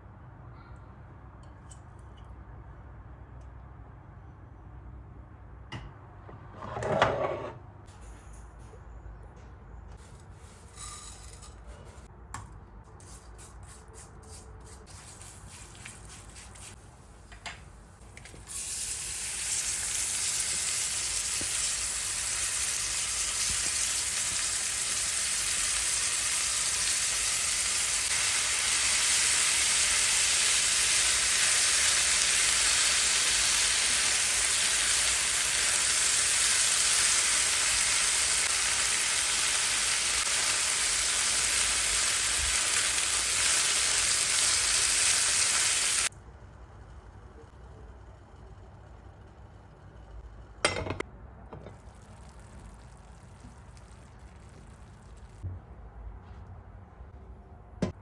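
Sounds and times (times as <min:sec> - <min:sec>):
food sizzling in hot fat: 0:18.4 - 0:46.1, 0:51.6 - 0:55.4
kitchen clicks and knocks: 0:50.7 - 0:51.8.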